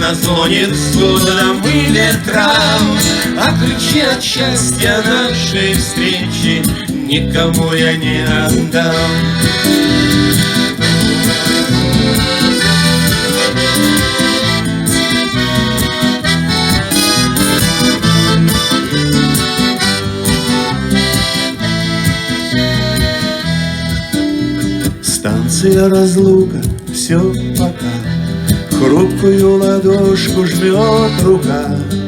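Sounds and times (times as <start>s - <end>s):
live band playing instrumental: 0.0s - 31.8s.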